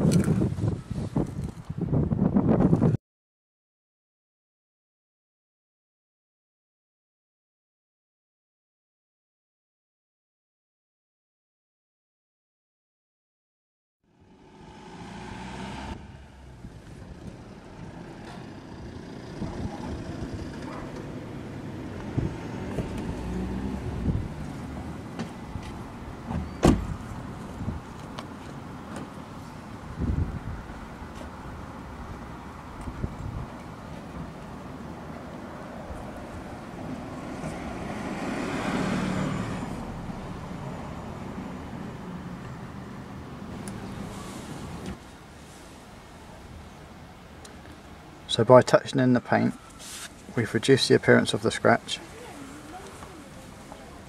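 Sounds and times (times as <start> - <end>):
road traffic noise: 14.0 - 54.0
vehicle passing: 14.1 - 45.6, 49.1 - 54.0.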